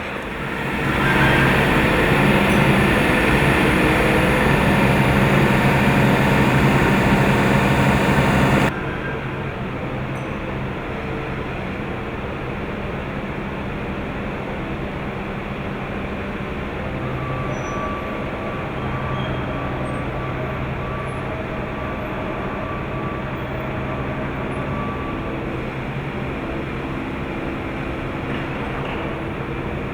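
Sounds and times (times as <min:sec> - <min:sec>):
engine hum: 0:00.0 - 0:10.1
excavator mechanical noise: 0:00.0 - 0:10.2.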